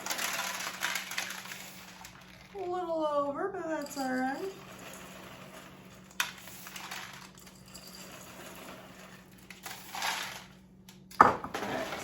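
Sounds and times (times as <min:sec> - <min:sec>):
dry cereal rustling: 0:00.0 - 0:02.5.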